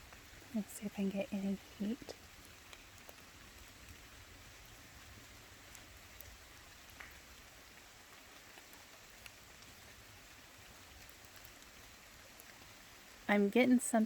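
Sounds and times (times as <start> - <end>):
faint outdoor hiss: 0.0 - 14.0
faint ticks: 1.9 - 4.0, 5.6 - 7.2.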